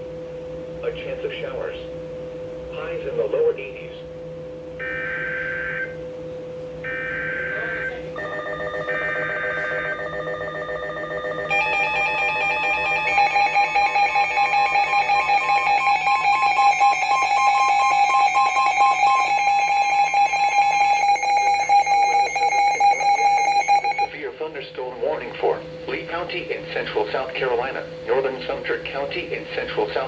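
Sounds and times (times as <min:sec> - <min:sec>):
two-tone attention signal: 0:06.8 - 0:24.1
warbling data code burst: 0:06.9 - 0:24.1.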